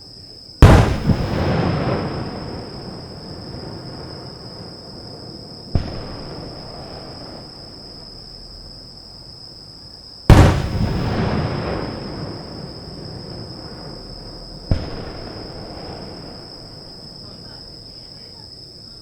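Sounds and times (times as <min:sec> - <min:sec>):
firework shells bursting: 0:00.6 - 0:08.2, 0:10.3 - 0:17.2.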